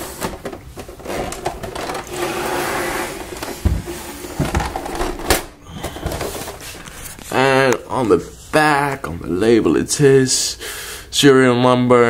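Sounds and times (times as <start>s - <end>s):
typewriter scraping on hard surface: 1.0s - 3.7s.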